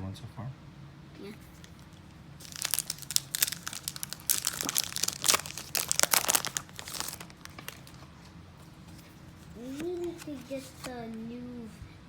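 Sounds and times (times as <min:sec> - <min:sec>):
foil wrapper crinkling and tearing: 0:01.5 - 0:08.1, 0:08.8 - 0:10.9.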